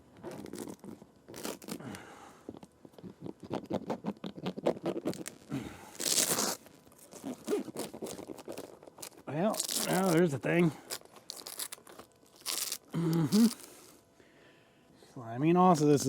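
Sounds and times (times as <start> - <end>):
stiff fabric crackling and rustling: 4.4 - 13.9.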